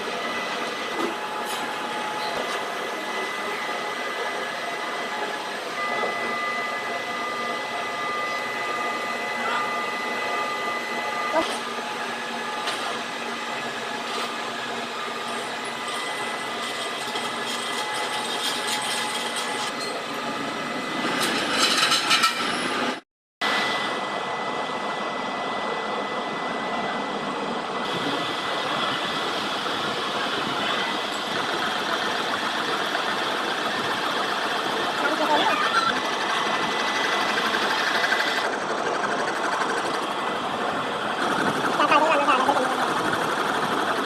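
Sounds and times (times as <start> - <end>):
metalworking machine running: 0.0 - 44.0
machine clatter: 31.1 - 44.0.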